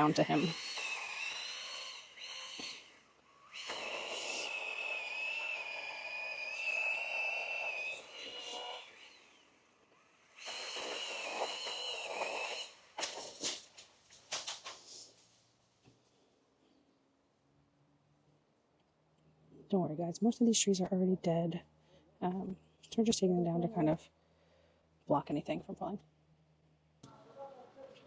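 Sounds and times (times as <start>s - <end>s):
distant chainsaw whining: 0.0s - 13.5s.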